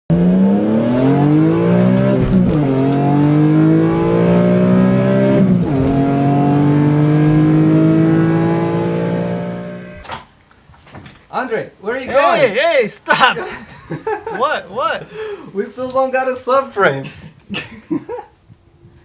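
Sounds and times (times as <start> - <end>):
car engine accelerating: 0.1 - 10.0.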